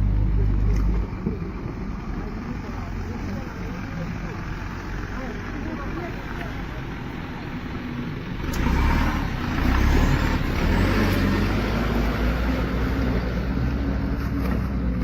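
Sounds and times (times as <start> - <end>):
heavy vehicle engine rumbling: 0.0 - 15.0.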